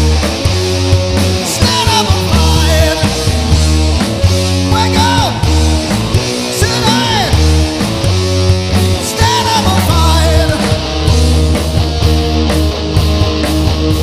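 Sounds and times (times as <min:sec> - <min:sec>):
punk rock band playing: 0:00.0 - 0:14.0
person singing: 0:01.4 - 0:03.3, 0:06.4 - 0:07.5, 0:08.9 - 0:10.9.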